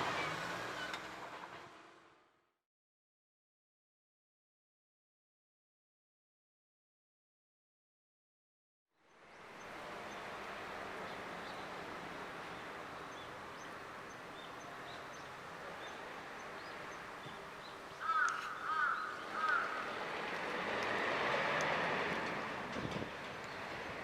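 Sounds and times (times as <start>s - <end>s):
outdoor background noise: 0.0s - 2.5s, 9.0s - 24.0s
crow cawing: 18.0s - 19.9s.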